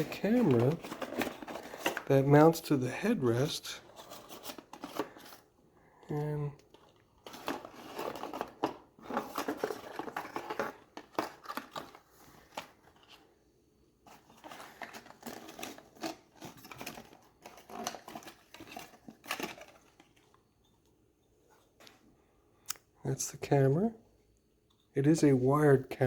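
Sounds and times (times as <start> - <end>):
packaging rustling and crinkling: 0.0 - 2.7, 3.5 - 5.6, 6.3 - 13.3, 14.0 - 20.5.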